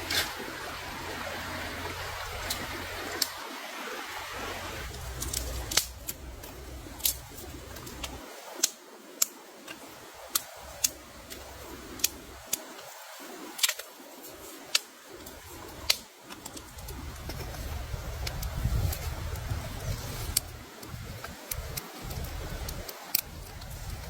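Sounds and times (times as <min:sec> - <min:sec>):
low background rumble: 0:04.2 - 0:08.2.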